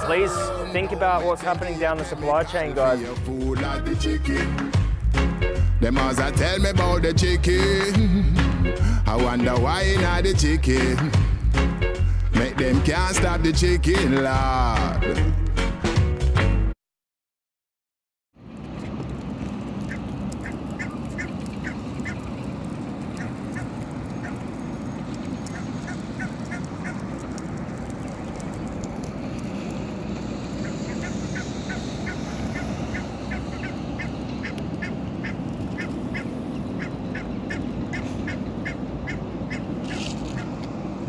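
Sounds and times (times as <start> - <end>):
fowl quacking and clucking: 30.6 - 40.5.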